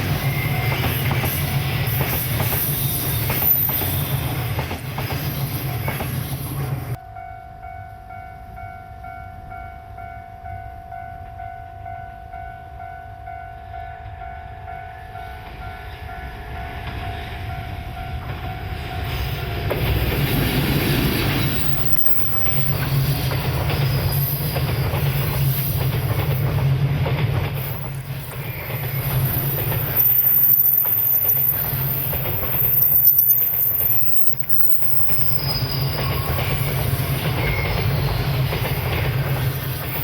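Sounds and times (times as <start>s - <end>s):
train wheels clacking over rail joints: 0.0s - 7.0s, 18.2s - 40.0s
train passing: 0.0s - 40.0s
level crossing warning bell: 6.9s - 19.2s.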